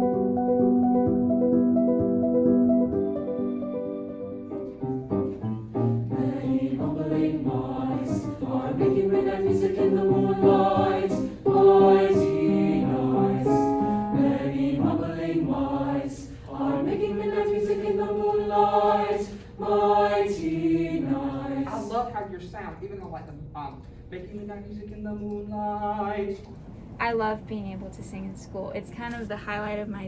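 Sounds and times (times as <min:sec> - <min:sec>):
choir singing in harmony: 0:06.1 - 0:22.0, 0:25.4 - 0:26.4.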